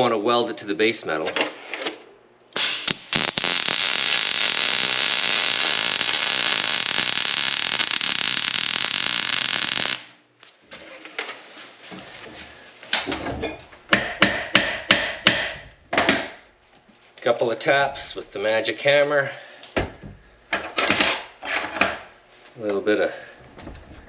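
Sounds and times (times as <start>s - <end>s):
welding arc crackling: 2.6s - 10.2s.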